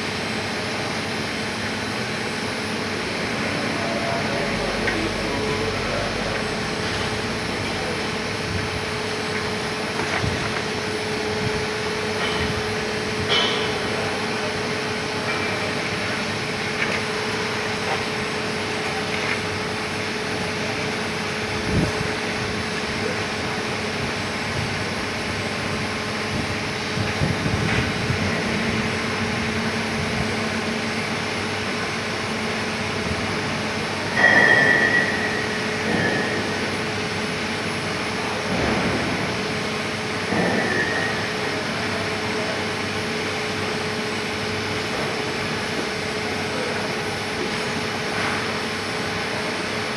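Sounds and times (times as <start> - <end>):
short higher tone: 3.0 - 9.3.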